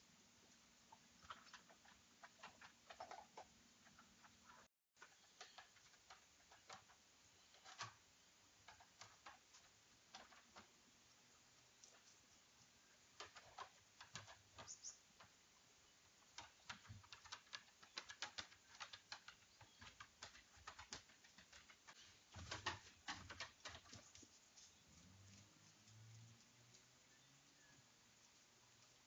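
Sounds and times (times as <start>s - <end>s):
light clicks and taps: 8.6s - 15.4s, 16.3s - 27.0s.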